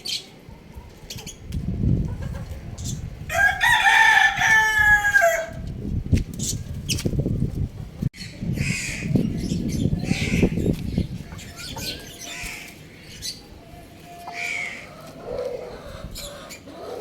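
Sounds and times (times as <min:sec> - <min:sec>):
rooster calling: 0:03.3 - 0:05.6, 0:13.7 - 0:17.0.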